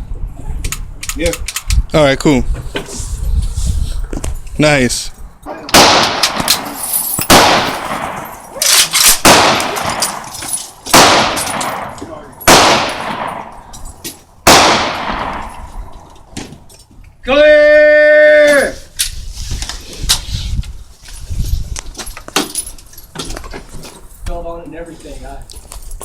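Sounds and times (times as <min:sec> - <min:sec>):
echoing gunshots: 0:05.7 - 0:13.7, 0:14.4 - 0:16.1.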